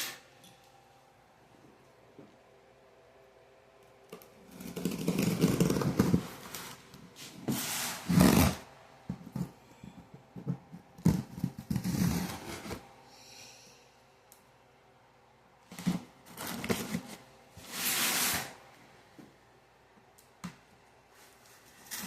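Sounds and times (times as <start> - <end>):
cardboard packaging scraping and rustling: 4.4 - 8.7, 11.0 - 12.9, 15.7 - 18.6, 21.2 - 22.0.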